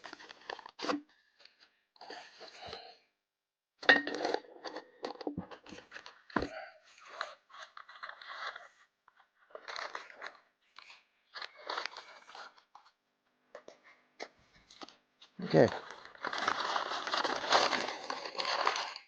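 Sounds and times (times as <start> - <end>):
packaging crunching and crinkling: 9.5 - 12.7, 14.8 - 19.0.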